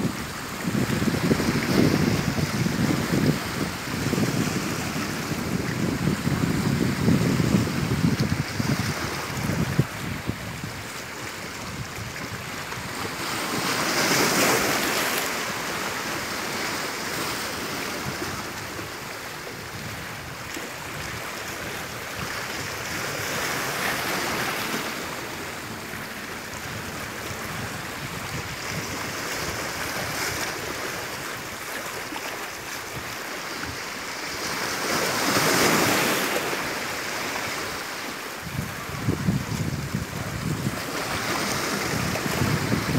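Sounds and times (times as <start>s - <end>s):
wind buffeting microphone: 0.0s - 14.8s, 17.8s - 31.6s, 37.5s - 42.9s
sea waves washing on shore: 0.0s - 42.9s.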